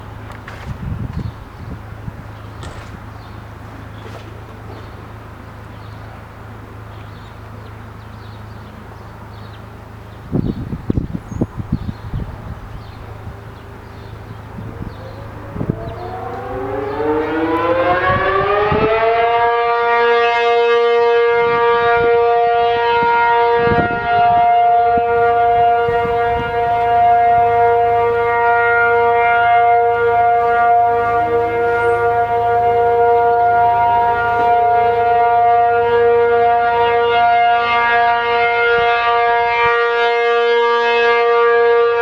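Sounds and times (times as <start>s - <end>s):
faint second siren: 11.4s - 42.0s
warning siren winding up: 14.4s - 20.6s.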